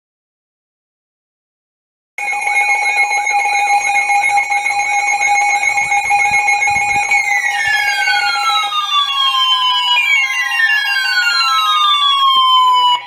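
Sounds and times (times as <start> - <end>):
fast warbling alarm tone: 2.2 - 13.0
long falling alarm sweeps: 2.2 - 13.0
steady alarm tones: 2.2 - 13.0.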